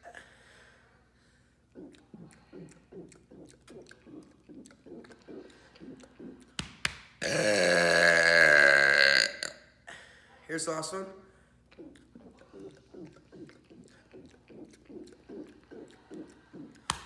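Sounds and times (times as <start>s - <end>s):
man burping: 7.2s - 9.6s.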